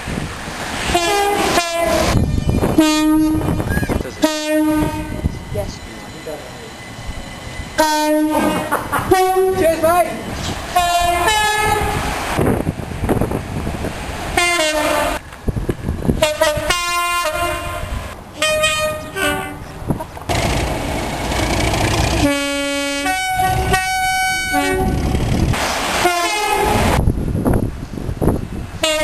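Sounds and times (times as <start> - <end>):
passing train rumble: 0.0 - 29.0
locomotive two-tone horn blasts: 0.9 - 5.3, 7.8 - 9.6, 10.8 - 12.0, 14.4 - 15.2, 16.2 - 19.7, 22.1 - 25.1, 26.0 - 27.0, 28.8 - 29.0.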